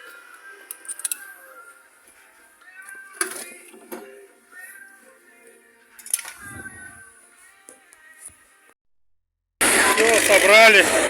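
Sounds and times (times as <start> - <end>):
background music with gliding tones: 0.0 - 8.8.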